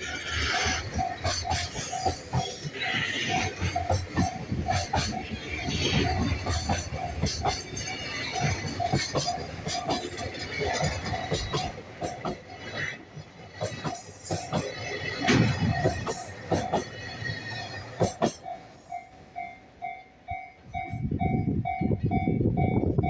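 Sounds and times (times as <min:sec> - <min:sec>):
train wheels knocking on rail joints: 0:00.0 - 0:19.0
level-crossing bell ringing: 0:18.5 - 0:22.0.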